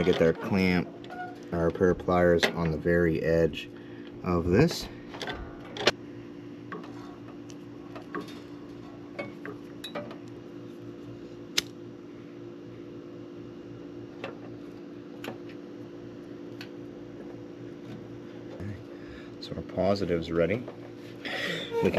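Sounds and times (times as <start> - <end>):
steady low hum: 0.0 - 21.9.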